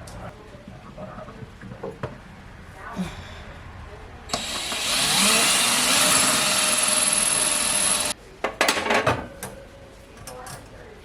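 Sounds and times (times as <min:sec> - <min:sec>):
power drill driving screw: 0:04.3 - 0:08.2.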